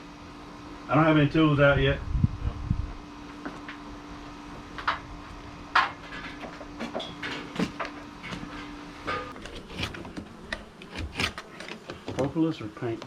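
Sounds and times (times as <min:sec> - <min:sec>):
steady hum: 0:00.0 - 0:13.0
vinyl siding trim clicking: 0:09.3 - 0:12.3.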